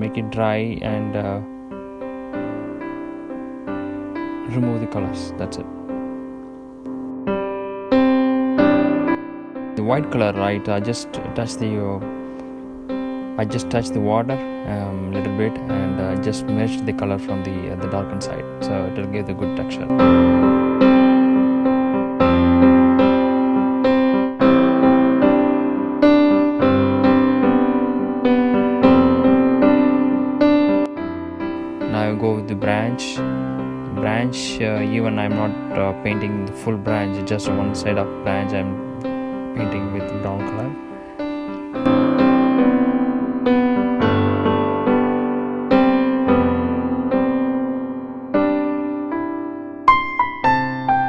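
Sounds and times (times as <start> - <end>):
gentle piano melody: 0.0 - 51.0.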